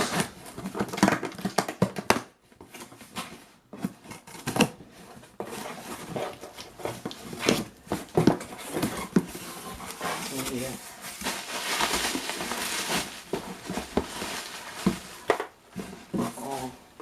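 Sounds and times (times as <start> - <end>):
cardboard box being opened: 2.7 - 16.9
packaging rustle: 5.6 - 16.8.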